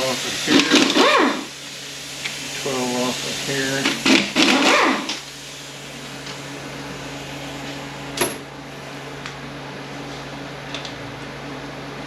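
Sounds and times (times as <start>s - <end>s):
low machine hum: 5.3s - 12.0s.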